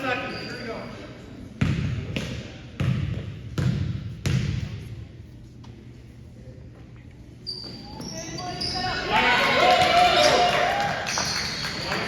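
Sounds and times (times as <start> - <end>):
faint hall noise: 0.0 - 12.0
basketball bouncing on court: 1.6 - 4.9.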